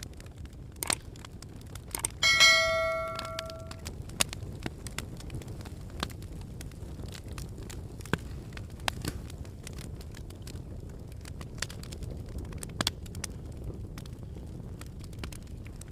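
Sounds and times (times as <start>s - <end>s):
campfire crackling and popping: 0.0s - 15.9s
metallic ring: 2.2s - 3.8s.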